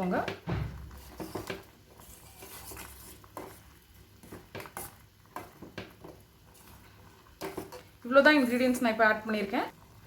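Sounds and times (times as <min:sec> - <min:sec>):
spoon stirring in cooking pot: 0:00.0 - 0:08.9.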